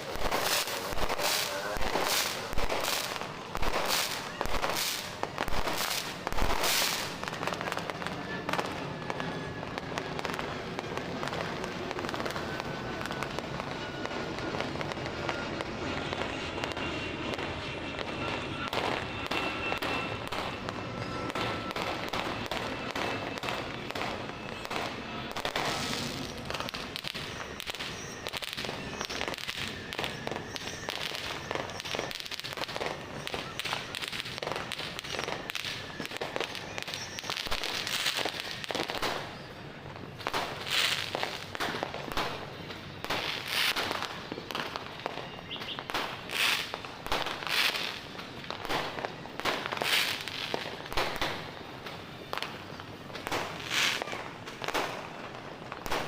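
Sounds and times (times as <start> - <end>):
loud firework bangs: 0.0 - 8.8, 40.2 - 51.6, 53.2 - 56.0
firecrackers crackling: 0.0 - 56.0.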